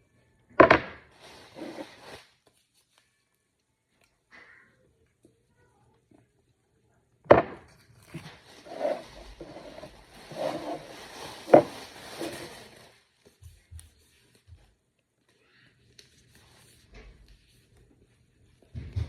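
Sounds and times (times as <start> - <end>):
items knocked onto hard surface: 0.6 - 1.0, 11.4 - 11.8
scraping and rustling: 1.1 - 2.9, 7.7 - 14.5.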